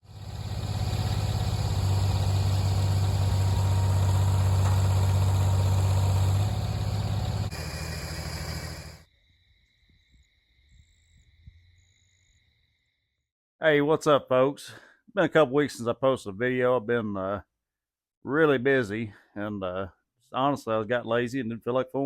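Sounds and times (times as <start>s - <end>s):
motor engine humming: 0.0s - 9.0s.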